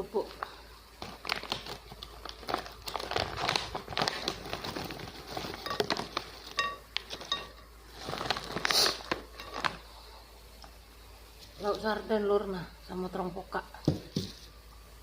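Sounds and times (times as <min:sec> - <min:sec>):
crunching fried crackers: 0:00.4 - 0:10.0.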